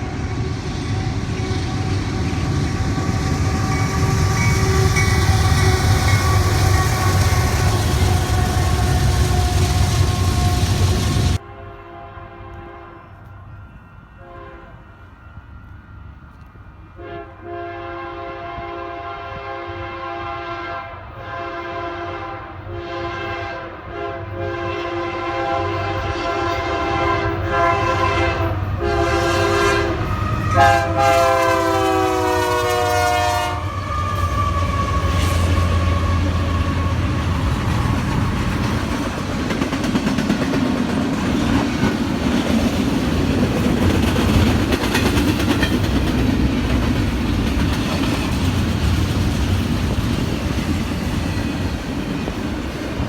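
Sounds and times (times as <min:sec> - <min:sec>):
train horn blasts: 0:00.0 - 0:13.4, 0:14.1 - 0:15.1, 0:16.9 - 0:37.4
passing train rumble and clickety-clack: 0:00.0 - 0:53.0.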